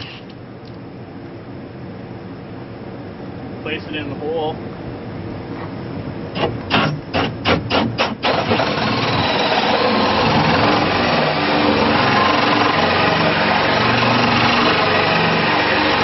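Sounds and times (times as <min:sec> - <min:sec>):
power drill cutting with hole saw: 0:06.4 - 0:16.0.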